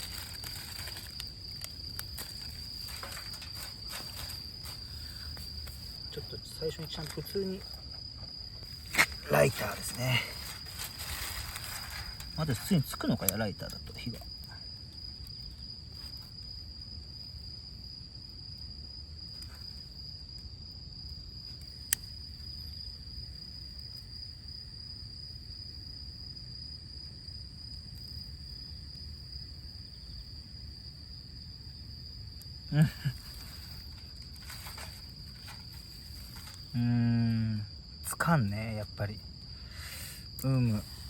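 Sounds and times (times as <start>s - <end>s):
crickets trilling: 0.0s - 41.0s.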